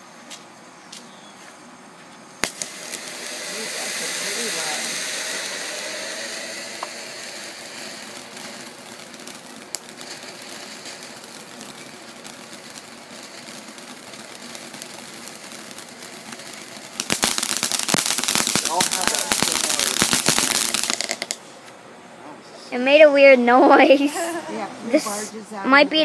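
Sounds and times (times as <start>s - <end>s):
small firework pops: 2.4s - 21.4s
firework fountain hissing: 2.4s - 21.6s, 22.7s - 26.0s.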